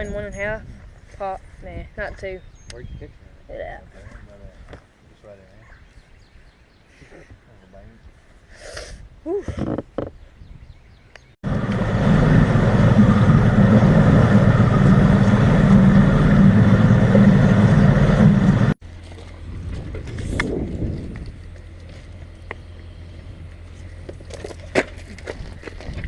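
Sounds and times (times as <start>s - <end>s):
engine running: 11.4s - 26.0s
quiet steady rumble: 11.4s - 26.0s.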